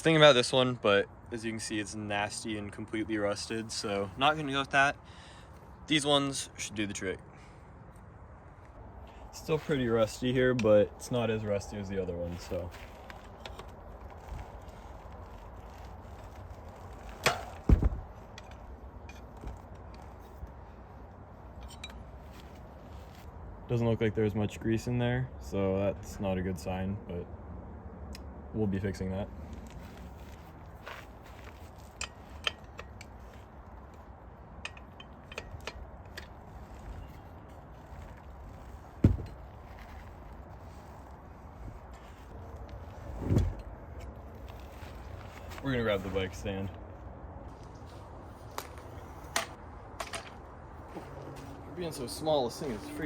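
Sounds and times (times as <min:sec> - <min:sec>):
heavy clunk with rattle: 0:17.2 - 0:18.1
heavy thud of object set down: 0:17.2 - 0:18.1, 0:39.0 - 0:39.4, 0:43.2 - 0:43.6
sharp knocks: 0:17.2 - 0:18.1, 0:39.0 - 0:39.4
light clicks of bike parts: 0:29.5 - 0:38.3.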